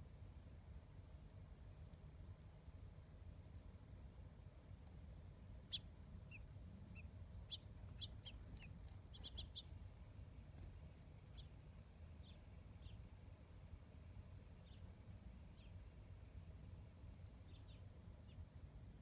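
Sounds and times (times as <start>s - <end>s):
low steady background hum: 0.0s - 19.0s
small birds chirping: 5.6s - 13.2s, 14.2s - 15.9s, 17.4s - 18.5s.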